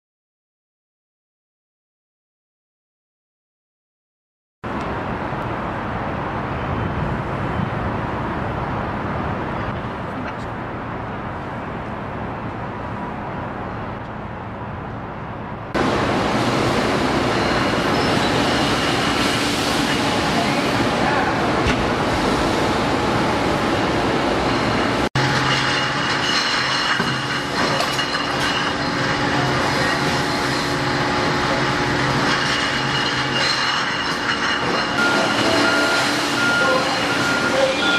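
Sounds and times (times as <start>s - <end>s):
machinery humming: 15.3s - 37.9s.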